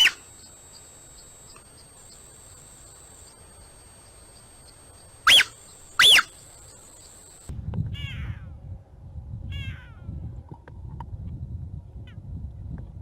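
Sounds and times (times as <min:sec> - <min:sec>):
big cat chirp calls: 0:00.0 - 0:03.0, 0:04.2 - 0:08.2.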